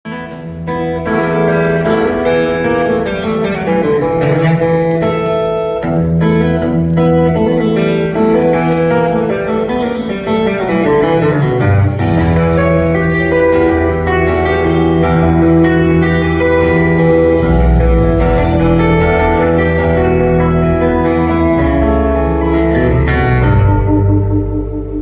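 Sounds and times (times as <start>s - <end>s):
strummed acoustic guitar: 0.1s - 25.0s
low bass notes: 15.0s - 25.0s.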